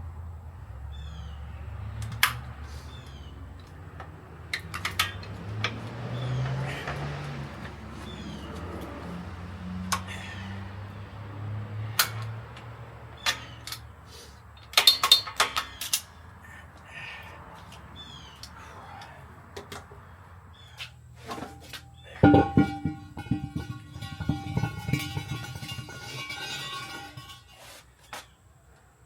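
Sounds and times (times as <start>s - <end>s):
sharp knocks and clanks: 21.3s - 27.6s
ringing clanks: 21.5s - 27.6s.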